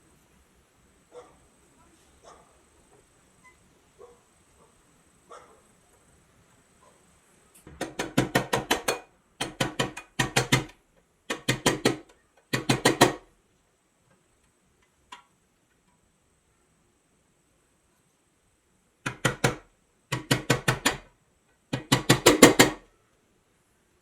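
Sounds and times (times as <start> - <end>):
rapid sharp tapping: 7.7 - 13.2, 19.0 - 21.1, 21.7 - 22.8.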